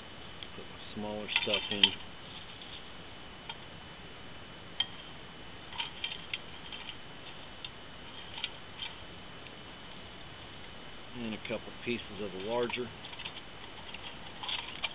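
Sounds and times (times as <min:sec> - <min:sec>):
twigs dropping into metal stove: 0:00.4 - 0:02.8, 0:11.8 - 0:14.9.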